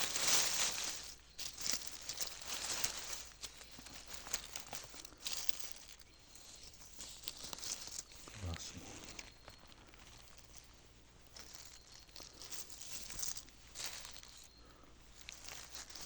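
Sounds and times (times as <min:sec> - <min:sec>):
dry leaves crackling: 0:00.0 - 0:16.0.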